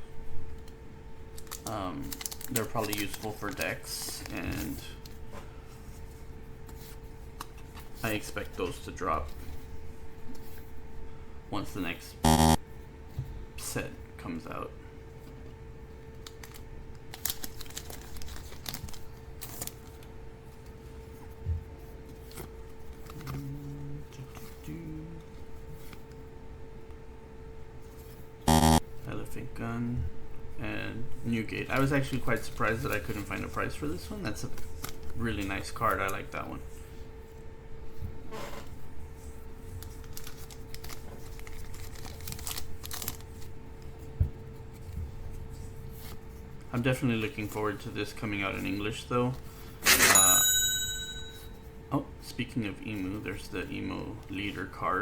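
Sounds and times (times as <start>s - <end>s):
faint steady hum: 0.0s - 55.0s
foil wrappers crinkling: 1.3s - 5.1s, 16.2s - 20.2s, 39.7s - 43.6s.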